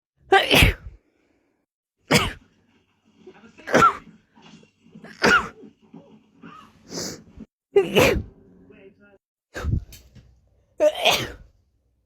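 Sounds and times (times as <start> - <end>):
person sneezing: 0.3 - 1.0, 7.8 - 8.3, 10.8 - 11.5.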